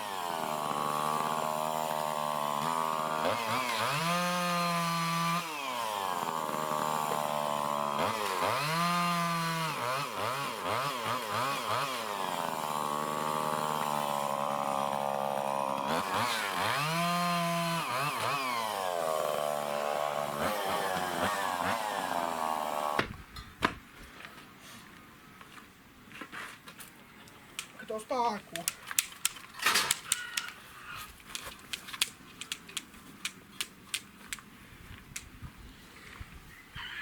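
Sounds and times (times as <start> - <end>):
small engine revving: 0.0 - 23.0.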